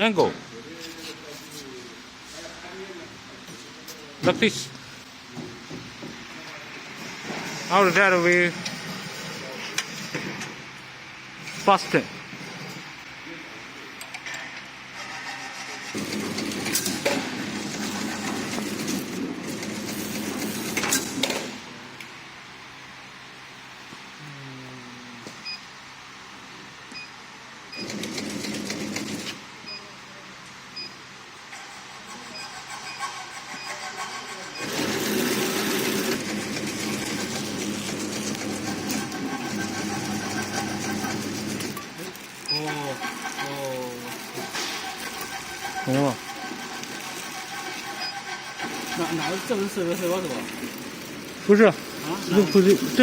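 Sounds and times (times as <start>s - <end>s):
machine rattling: 14.9s - 21.6s, 27.8s - 29.4s, 32.7s - 53.0s.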